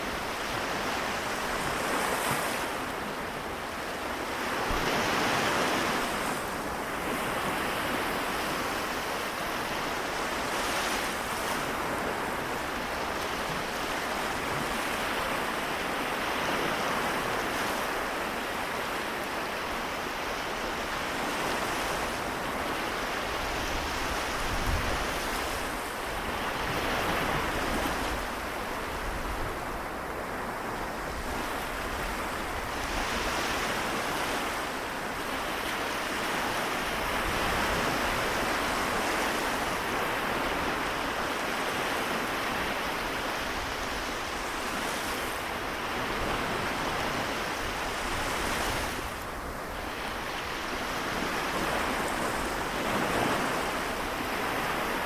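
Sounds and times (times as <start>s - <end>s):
small waves washing ashore: 0.0s - 55.0s
wind buffeting microphone: 21.9s - 34.5s.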